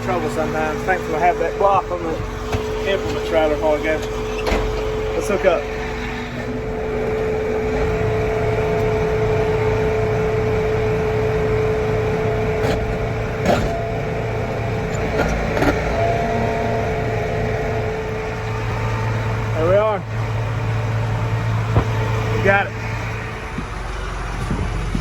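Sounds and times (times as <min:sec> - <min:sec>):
tractor engine whining: 0:00.0 - 0:25.0
short clunks: 0:02.2 - 0:05.2, 0:12.5 - 0:14.2, 0:21.7 - 0:25.0.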